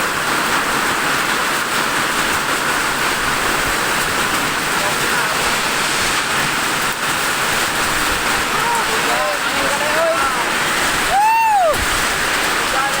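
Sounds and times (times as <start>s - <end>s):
heavy rain in strong wind: 0.0s - 13.0s.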